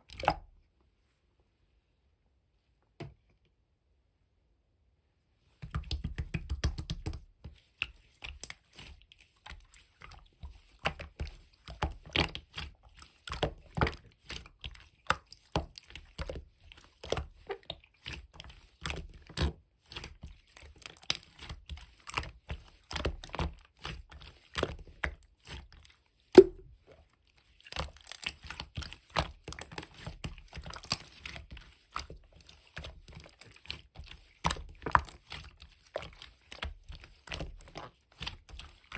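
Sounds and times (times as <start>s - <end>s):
slime squishing: 5.6s - 38.9s
loud slime pop: 26.4s - 26.7s.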